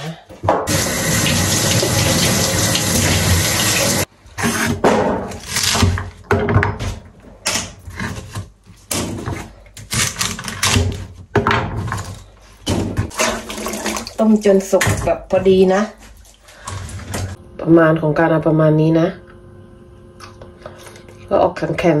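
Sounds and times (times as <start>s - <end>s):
splashing and clattering in sink: 11.4s - 17.4s.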